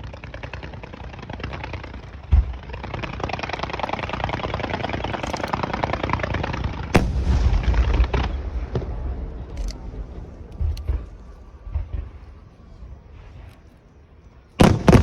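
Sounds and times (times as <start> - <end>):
fireworks crackling: 0.0 - 13.5, 14.6 - 15.0
firework bang with rumbling tail: 7.0 - 12.3.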